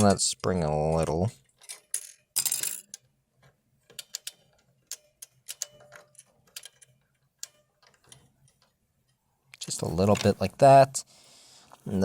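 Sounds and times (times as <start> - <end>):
faint clicks of keyboard parts: 2.9 - 10.5.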